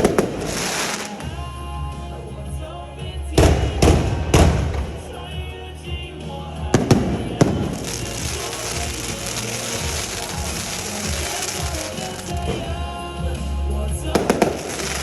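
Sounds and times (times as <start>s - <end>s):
fireworks bangs: 0.0s - 1.5s, 3.4s - 5.4s, 6.7s - 13.0s, 14.2s - 15.0s
fireworks crackle: 0.0s - 1.9s, 6.3s - 15.0s.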